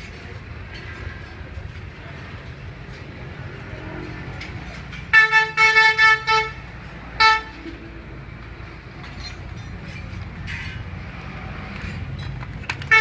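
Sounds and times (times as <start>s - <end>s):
low traffic rumble: 0.0s - 13.0s
vehicle horn beeping: 5.1s - 7.8s.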